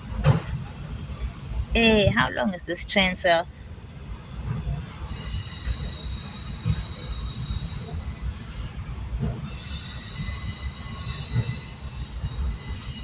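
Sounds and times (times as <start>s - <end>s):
train rumbling past: 0.0s - 13.0s
steel wheel squeal: 4.6s - 13.0s.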